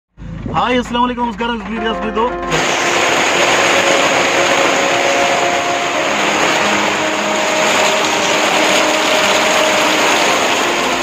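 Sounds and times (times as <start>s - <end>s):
heavy rain falling: 2.3s - 11.0s.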